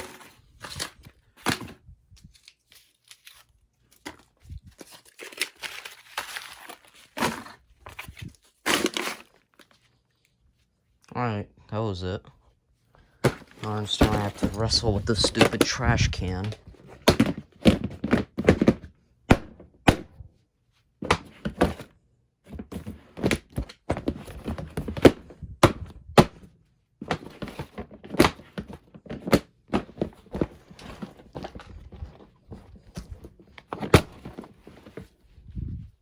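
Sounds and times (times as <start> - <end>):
rustling and scraping: 0.0 - 11.0, 13.0 - 19.0, 20.7 - 36.0
trash can thunks and knocks: 13.3 - 20.0.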